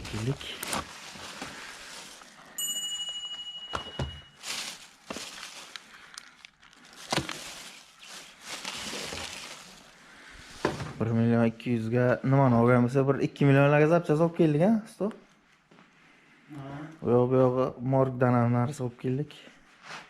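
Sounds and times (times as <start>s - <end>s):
metal ringing tone: 2.6s - 4.4s.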